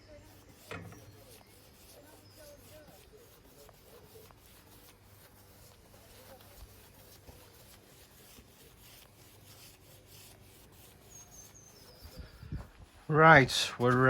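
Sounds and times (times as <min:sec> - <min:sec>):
paintbrush rubbing strokes: 0:00.0 - 0:14.0
bird chirping: 0:11.0 - 0:12.6.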